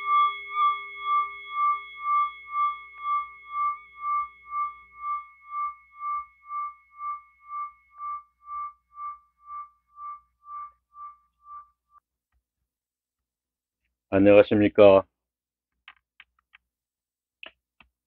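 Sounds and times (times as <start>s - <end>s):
high bell-like tone ringing: 0.0s - 12.0s.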